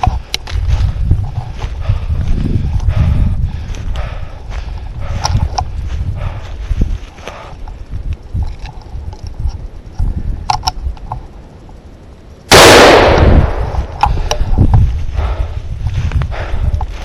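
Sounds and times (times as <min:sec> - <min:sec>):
rifle shot with echo: 0:12.5 - 0:13.9.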